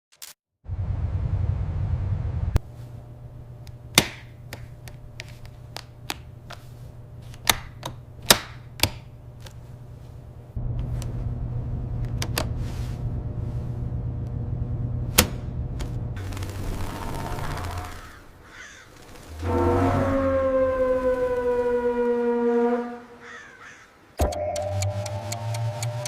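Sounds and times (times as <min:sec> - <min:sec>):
low steady rumble: 0:00.6 - 0:18.4.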